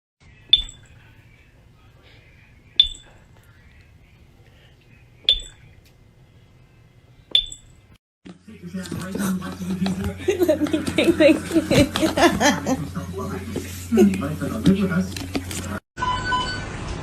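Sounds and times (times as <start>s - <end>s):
faint low hum: 0.2s - 15.8s
sharp ringing clinks: 2.8s - 3.1s.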